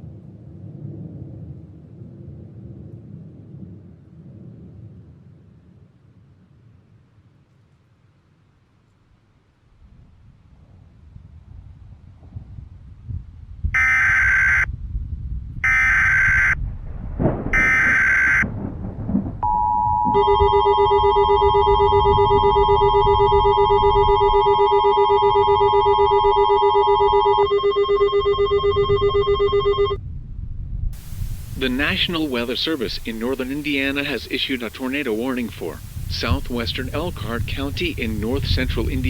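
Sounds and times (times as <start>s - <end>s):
two-tone attention signal: 19.4s - 30.0s
pulsing buzzy tone: 19.8s - 30.0s
screeching digital data bursts: 20.1s - 30.0s.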